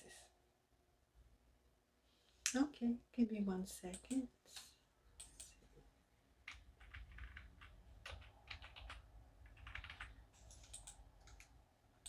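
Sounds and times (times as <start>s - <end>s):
faint typing on a keyboard: 3.9s - 5.8s, 6.4s - 11.6s.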